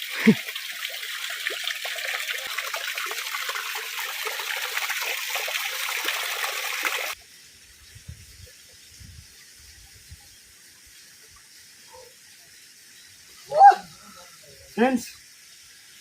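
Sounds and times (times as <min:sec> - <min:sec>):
waterfall splashing on rock: 0:00.0 - 0:07.2.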